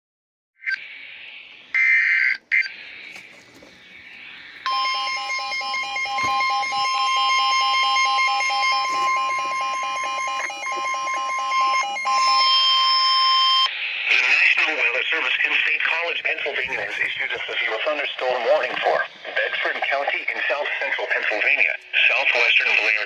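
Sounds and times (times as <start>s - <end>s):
harsh digital data tones: 3.8s - 13.8s
long steady alert tone: 3.9s - 13.7s.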